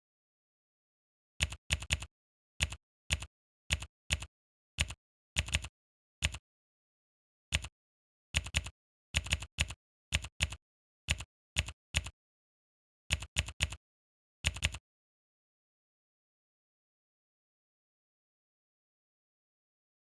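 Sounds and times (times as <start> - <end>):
computer keyboard typing clicks: 1.4 - 6.4, 7.5 - 7.7, 8.4 - 12.1, 13.1 - 13.8, 14.5 - 14.8.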